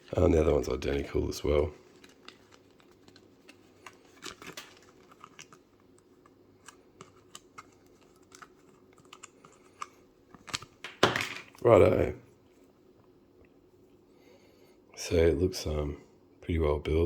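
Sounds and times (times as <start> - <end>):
cables and packaging rustling: 0.0 - 11.7.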